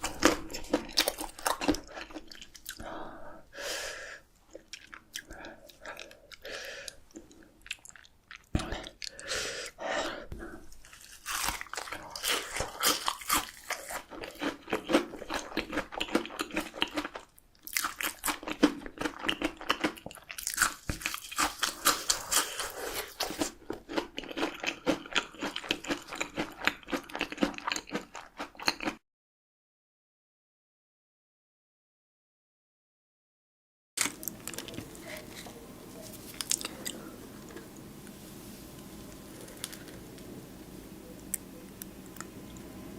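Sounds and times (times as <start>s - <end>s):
person chewing crisp food: 0.0s - 3.1s, 4.4s - 9.8s, 10.4s - 29.0s, 34.0s - 40.3s.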